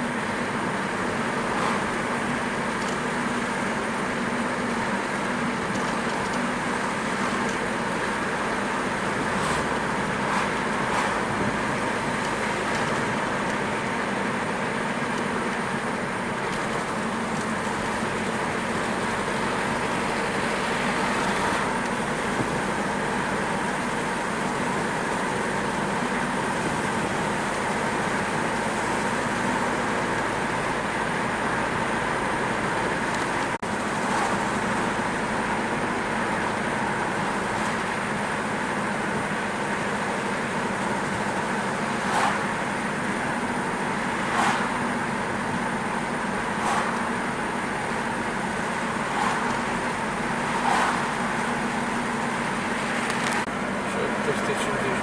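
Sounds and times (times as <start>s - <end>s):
car engine and tyre noise: 0.0s - 55.0s
passing swooshes: 49.0s - 49.8s, 50.4s - 51.4s.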